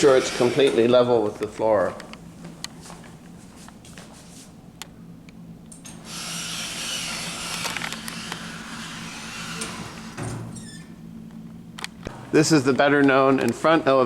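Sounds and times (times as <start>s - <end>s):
elevator low hum: 4.6s - 14.0s.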